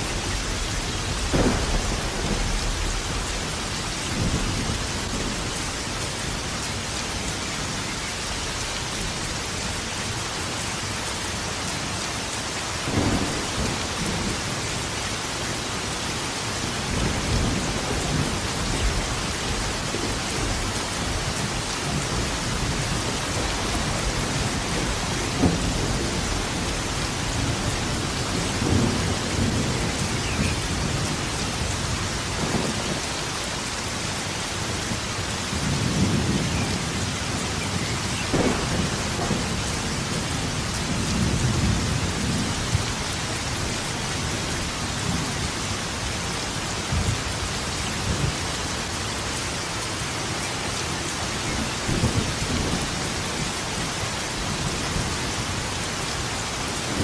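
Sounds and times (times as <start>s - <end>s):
sharp thunderclap: 0.0s - 5.5s, 12.9s - 14.6s, 21.9s - 31.1s, 38.2s - 42.8s
thunder rumbling: 0.0s - 6.6s, 12.9s - 15.0s, 16.6s - 33.6s, 34.6s - 46.1s
heavy rain: 0.0s - 57.0s.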